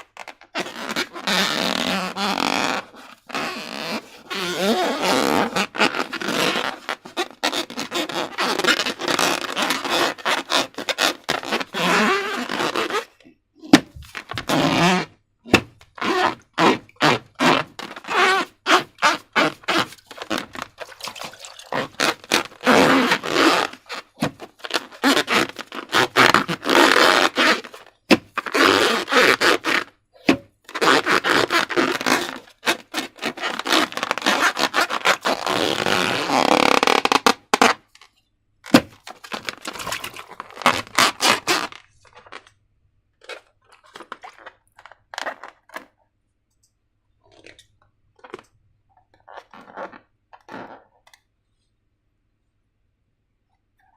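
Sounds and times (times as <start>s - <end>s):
slime squelching: 19.0s - 24.4s, 38.7s - 42.5s.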